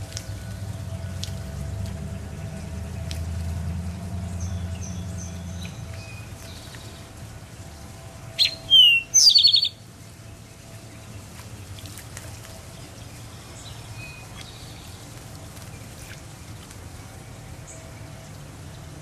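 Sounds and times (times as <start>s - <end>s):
low background noise: 0.0s - 19.0s
small bird calling: 8.4s - 9.8s.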